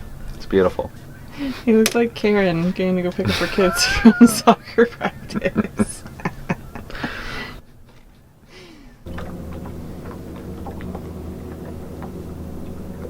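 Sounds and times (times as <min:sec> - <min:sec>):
low mechanical hum: 0:08.9 - 0:13.0.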